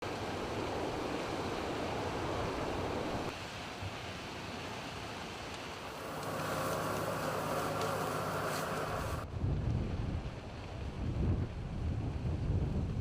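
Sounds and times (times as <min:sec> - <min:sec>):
rushing wind: 0:00.0 - 0:13.0
low steady hum: 0:05.9 - 0:09.2.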